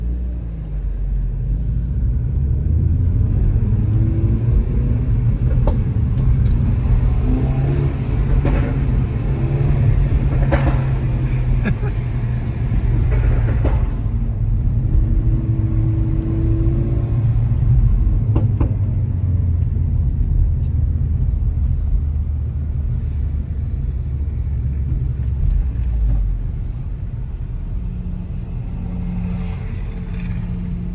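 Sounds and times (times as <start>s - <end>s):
car engine and exhaust drone: 0.0s - 30.9s
exhaust pops: 3.3s - 23.8s.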